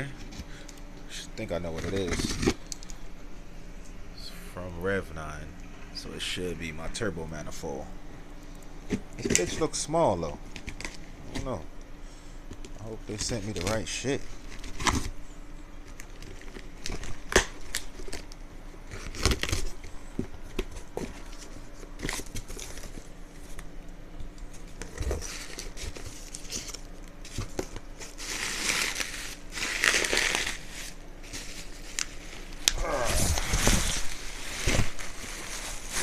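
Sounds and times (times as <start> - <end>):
packing material crinkling and tearing: 1.1 - 3.0, 12.8 - 15.2, 15.8 - 23.7, 24.3 - 36.0.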